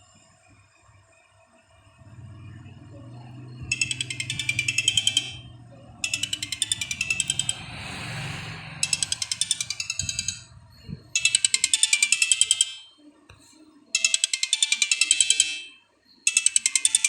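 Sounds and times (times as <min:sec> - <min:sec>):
phone ringtone tinkling pulses: 0:02.9 - 0:13.0, 0:13.9 - 0:17.0.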